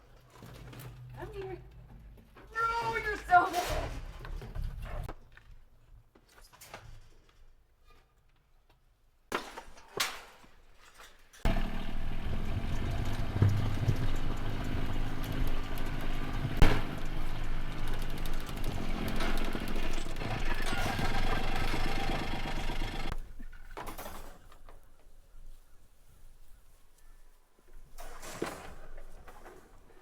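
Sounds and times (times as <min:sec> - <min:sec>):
engine running steadily: 0:11.5 - 0:23.2.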